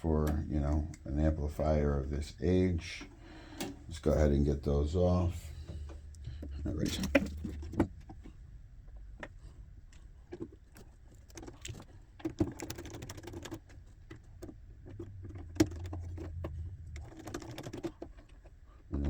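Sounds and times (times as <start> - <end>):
cables and connectors clicking: 10.3 - 19.0
low hum: 13.9 - 19.0.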